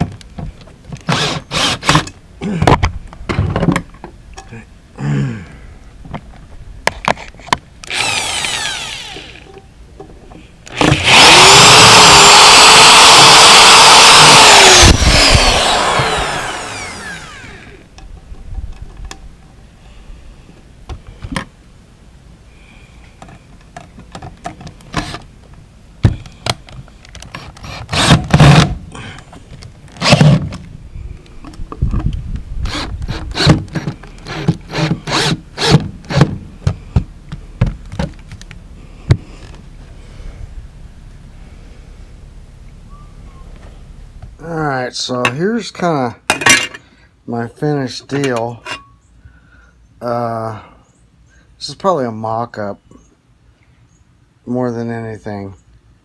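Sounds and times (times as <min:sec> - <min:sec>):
power tool motor running: 0:01.1 - 0:02.0, 0:07.8 - 0:09.5, 0:10.7 - 0:17.8, 0:27.6 - 0:28.7, 0:30.0 - 0:30.4, 0:34.2 - 0:36.2.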